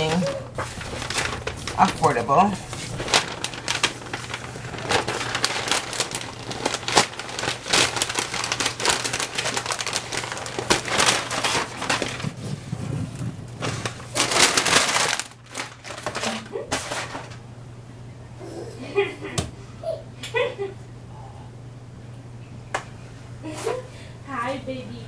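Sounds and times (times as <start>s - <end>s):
adhesive sheet crackling: 0.0s - 12.4s, 13.6s - 17.4s
low steady hum: 0.0s - 25.0s.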